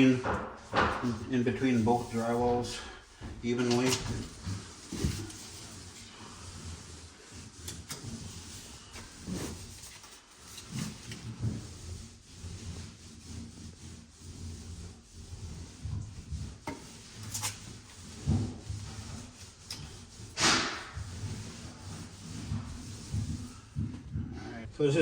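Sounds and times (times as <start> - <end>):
drywall tape rubbing and scraping: 0.0 - 25.0.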